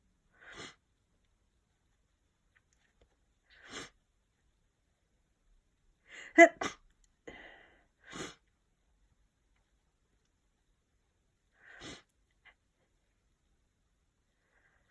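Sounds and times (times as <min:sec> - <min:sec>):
person sneezing: 0:06.2 - 0:06.8
soft breathing: 0:14.3 - 0:14.9.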